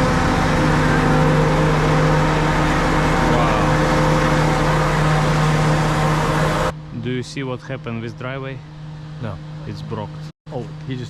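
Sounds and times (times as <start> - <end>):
truck engine idling: 0.0 - 11.0.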